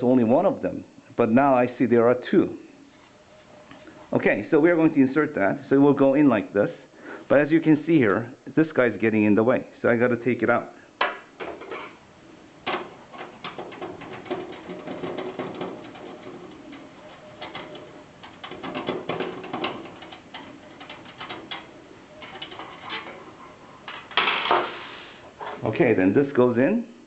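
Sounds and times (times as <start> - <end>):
computer parts clicking and rattling: 12.6 - 24.7.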